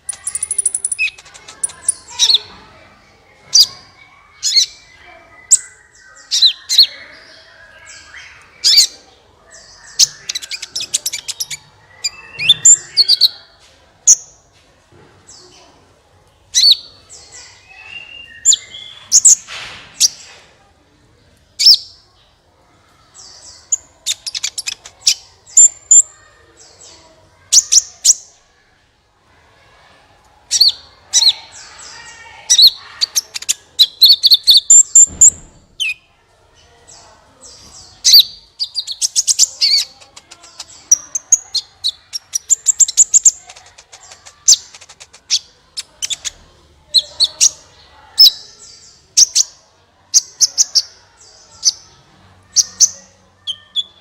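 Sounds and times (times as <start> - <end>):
sunbird chirping and trilling: 0.0 - 14.4, 16.4 - 20.3, 23.1 - 28.4, 30.5 - 49.6.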